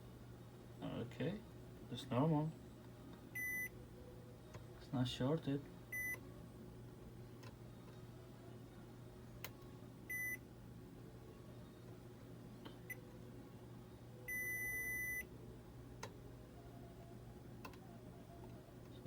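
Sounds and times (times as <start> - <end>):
low steady hum: 0.0 - 19.0
multimeter continuity beeps: 3.4 - 3.7, 5.9 - 6.2, 10.1 - 10.4, 14.3 - 15.3.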